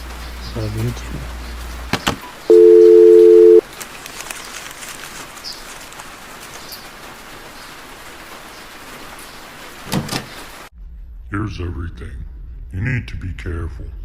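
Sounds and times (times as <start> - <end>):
steady rain: 0.0 - 10.7
loud electronic tone: 2.5 - 3.6.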